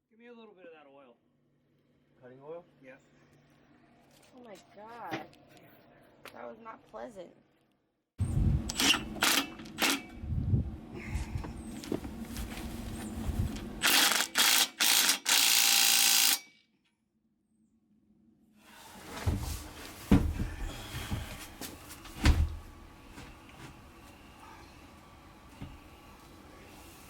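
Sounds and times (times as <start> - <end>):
power drill boring into metal: 8.7 - 10.1, 13.8 - 16.6
dull knocks: 19.3 - 21.4.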